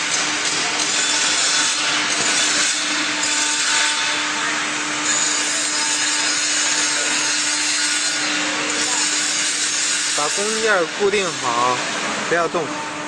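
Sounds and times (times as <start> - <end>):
woodworking machinery running: 0.0 - 13.0.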